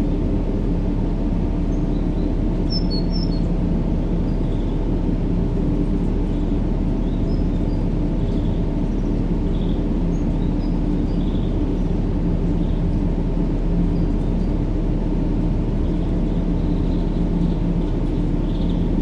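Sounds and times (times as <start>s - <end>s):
faint high bird chirps: 2.6s - 3.5s.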